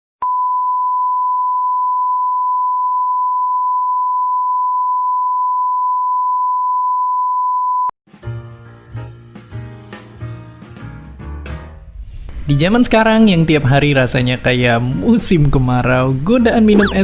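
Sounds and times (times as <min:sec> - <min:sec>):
music: 0:08.1 - 0:12.9
electronic test tone: 0:16.8 - 0:17.0.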